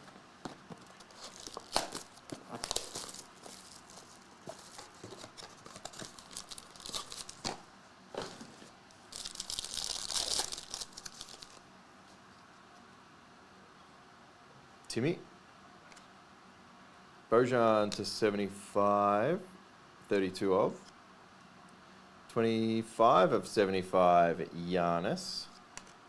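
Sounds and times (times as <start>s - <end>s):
cards being handled: 0.0s - 11.6s
card pack wrapper crinkling and tearing: 0.7s - 11.6s.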